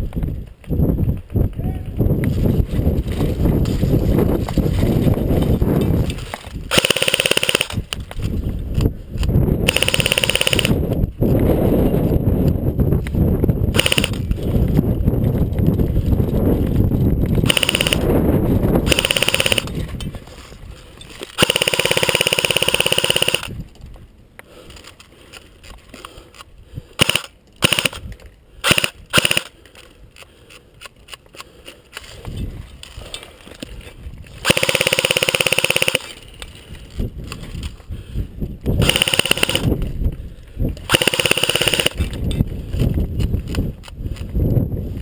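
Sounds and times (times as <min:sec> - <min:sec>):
airsoft guns firing full-auto: 0:06.7 - 0:08.0, 0:09.6 - 0:10.8, 0:13.7 - 0:14.3, 0:17.4 - 0:18.1, 0:18.8 - 0:19.7, 0:21.4 - 0:23.6, 0:27.0 - 0:28.0, 0:28.6 - 0:29.5, 0:34.4 - 0:36.2, 0:38.8 - 0:39.8, 0:40.9 - 0:42.1.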